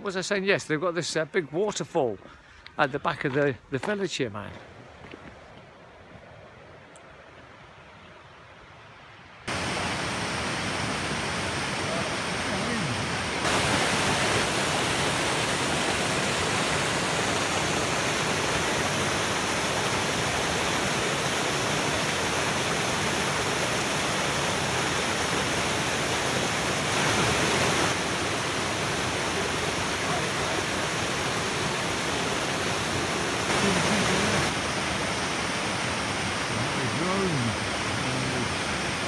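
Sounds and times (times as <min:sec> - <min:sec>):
waterfall rushing: 0:09.5 - 0:39.0.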